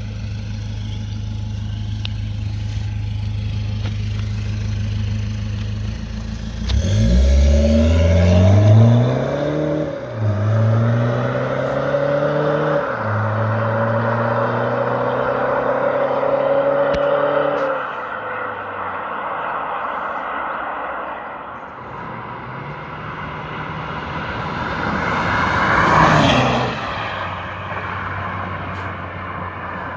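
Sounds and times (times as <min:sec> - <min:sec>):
diesel car exhaust revving: 0:00.0 - 0:18.8.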